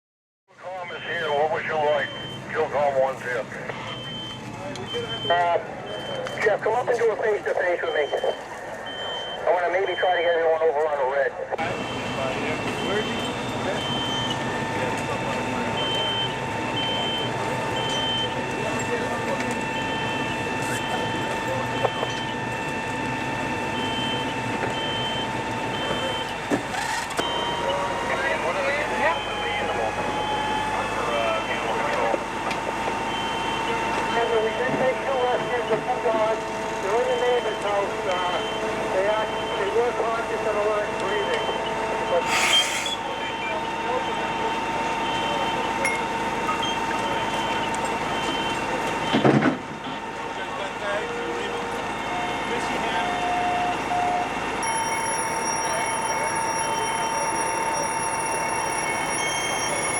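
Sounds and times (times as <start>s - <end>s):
fire truck engine running: 0.5s - 59.9s
short electronic beeps: 2.0s - 2.5s, 3.7s - 6.4s, 7.8s - 10.3s, 11.9s - 18.8s, 52.0s - 59.9s.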